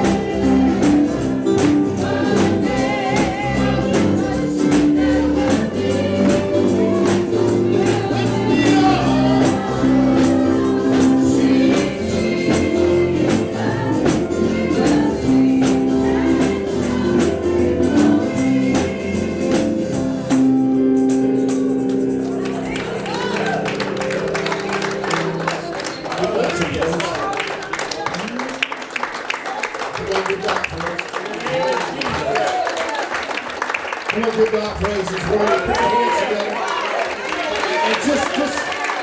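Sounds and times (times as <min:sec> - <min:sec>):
tambourine beat: 0:00.0 - 0:23.6
voices singing gospel: 0:00.0 - 0:27.8
held instrumental chords: 0:00.0 - 0:28.1.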